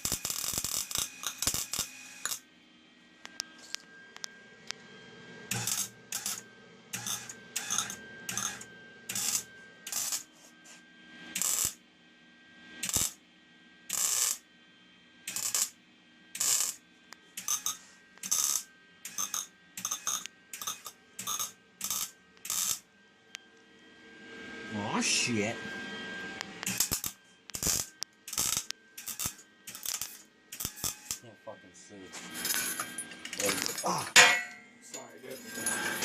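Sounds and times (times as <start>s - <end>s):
welder arc crackling: 0.0s - 2.5s, 5.5s - 10.3s, 11.4s - 11.8s, 12.8s - 13.2s, 13.9s - 14.4s, 15.3s - 15.8s, 16.4s - 23.4s, 26.4s - 31.3s, 33.4s - 33.9s.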